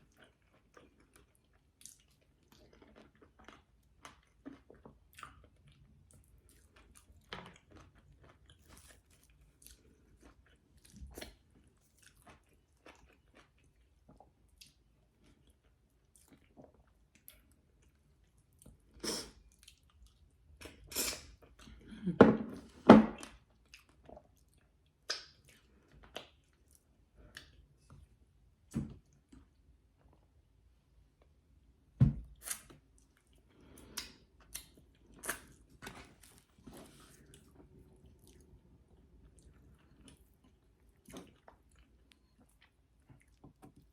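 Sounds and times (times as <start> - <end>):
person chewing and mouth sounds: 0.0 - 22.1, 23.2 - 28.1, 32.4 - 43.9.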